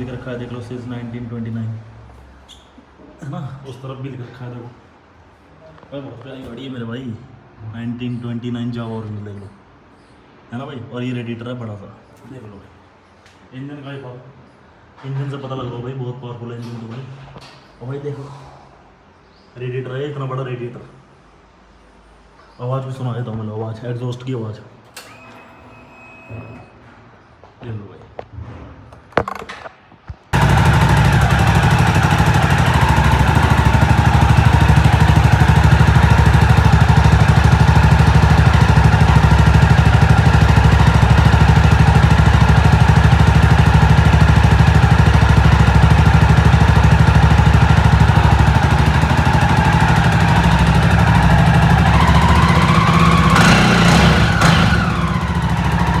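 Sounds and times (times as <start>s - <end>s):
motorcycle engine idling: 30.4s - 56.0s.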